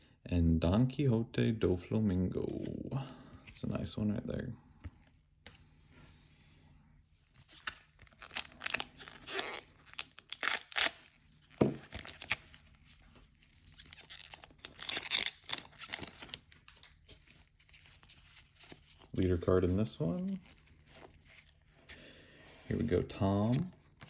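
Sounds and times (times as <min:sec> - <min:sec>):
foil wrapper tearing and crinkling: 0:07.6 - 0:12.7, 0:13.7 - 0:17.0.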